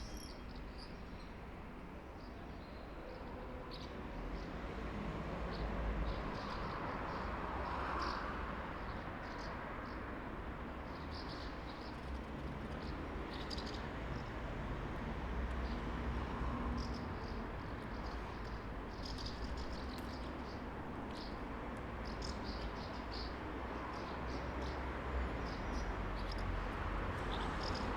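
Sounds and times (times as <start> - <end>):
traffic rumble: 12.0 - 27.9.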